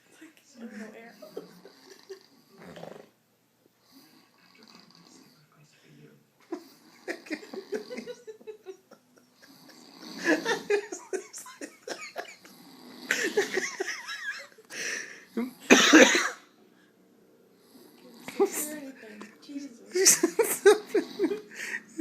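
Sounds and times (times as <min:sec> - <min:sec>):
man snoring: 0:01.3 - 0:03.2, 0:03.8 - 0:05.4, 0:06.6 - 0:08.3, 0:09.4 - 0:13.9, 0:20.7 - 0:22.0.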